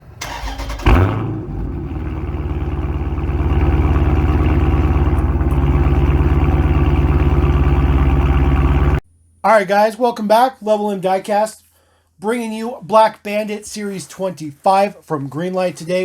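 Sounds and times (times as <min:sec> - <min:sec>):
car engine starting and running: 0:00.0 - 0:09.0.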